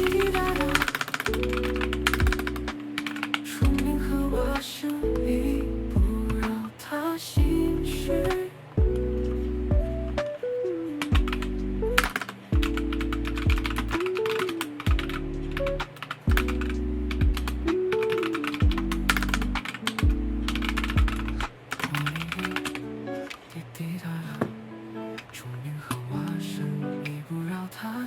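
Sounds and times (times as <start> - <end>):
typing on computer keyboard: 0.0 - 5.3, 11.0 - 23.4
background music with bass line: 1.4 - 2.8, 3.6 - 6.5, 7.4 - 10.3, 11.1 - 14.0, 14.9 - 17.8, 18.6 - 21.5.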